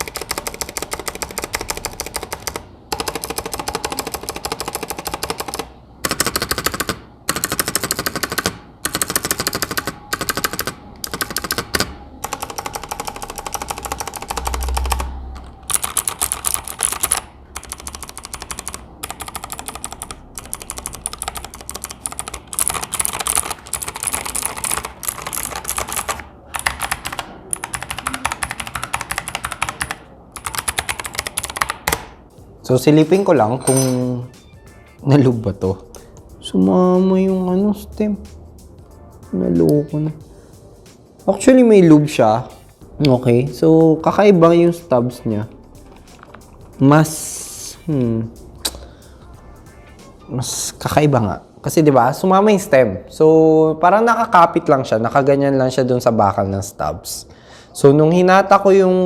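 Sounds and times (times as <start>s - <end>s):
mechanical keyboard typing: 0.0s - 32.2s.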